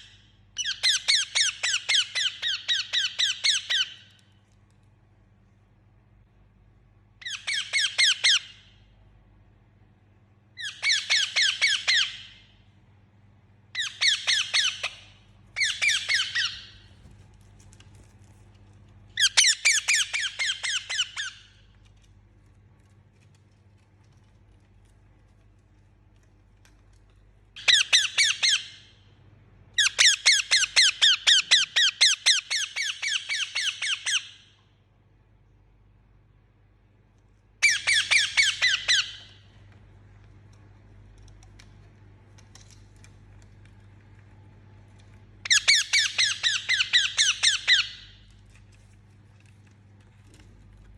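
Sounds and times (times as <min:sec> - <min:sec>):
parakeet shrill squawks: 0:00.6 - 0:04.1, 0:07.2 - 0:08.7, 0:10.6 - 0:12.4, 0:13.8 - 0:16.8, 0:19.2 - 0:21.6, 0:27.6 - 0:28.9, 0:29.8 - 0:34.5, 0:37.6 - 0:39.4, 0:45.4 - 0:48.2.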